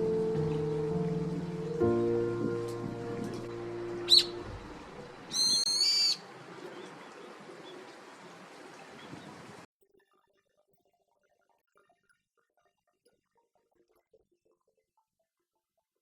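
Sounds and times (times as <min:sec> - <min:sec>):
background music: 0:00.0 - 0:05.2
wild bird calls: 0:04.0 - 0:07.8.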